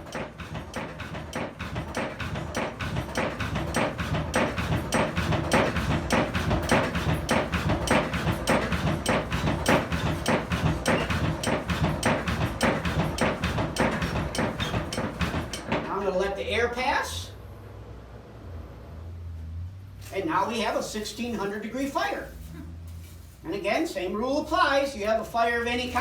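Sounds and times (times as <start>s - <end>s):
hand-cranked forge blower clacking: 0.0s - 16.4s.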